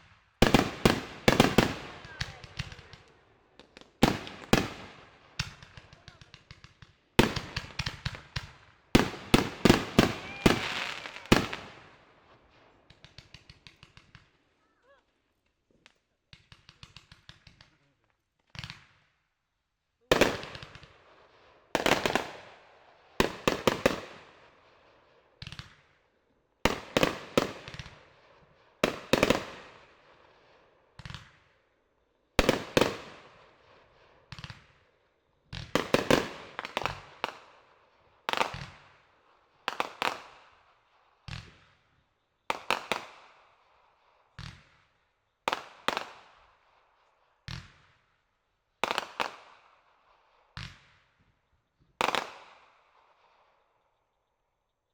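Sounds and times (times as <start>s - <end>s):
fireworks bangs: 0.4s - 12.1s, 21.8s - 22.5s, 35.5s - 37.4s.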